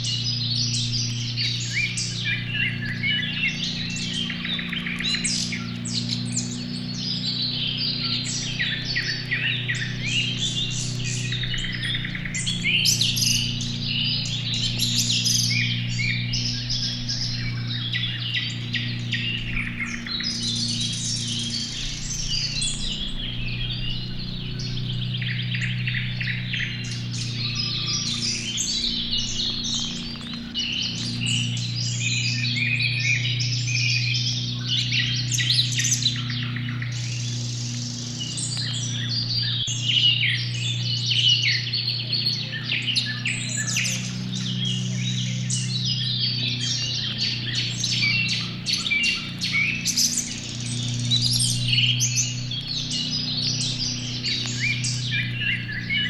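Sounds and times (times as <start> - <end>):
songbirds chirping: 0.0 - 56.0
steady low hum: 0.0 - 56.0.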